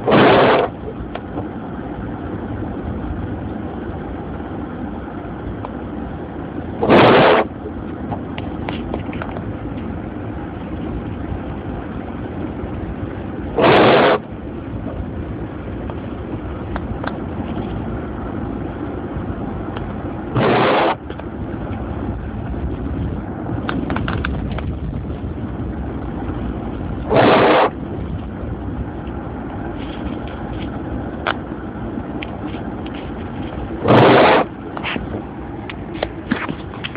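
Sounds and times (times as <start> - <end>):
road and engine rumble: 0.0 - 36.9
loud swish: 20.4 - 21.0, 27.1 - 27.8.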